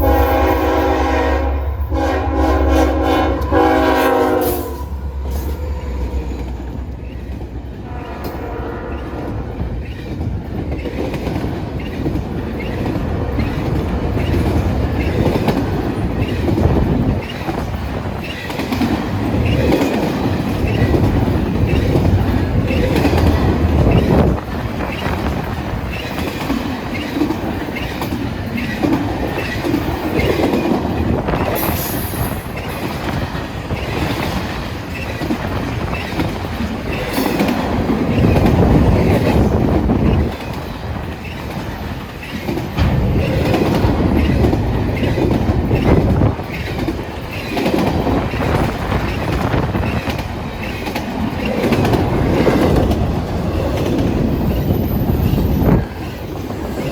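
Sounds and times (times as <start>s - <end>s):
freight train rolling: 0.0s - 56.9s
wheels clacking over rail joints: 4.9s - 56.9s
train wheels squealing: 31.3s - 38.4s, 53.6s - 56.9s.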